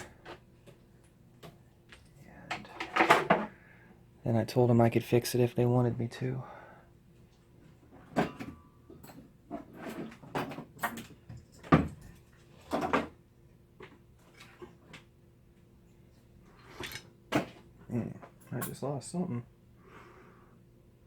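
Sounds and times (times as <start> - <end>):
faint steady hum: 0.0 - 21.0
objects knocking and clattering: 2.5 - 3.6, 7.9 - 13.2.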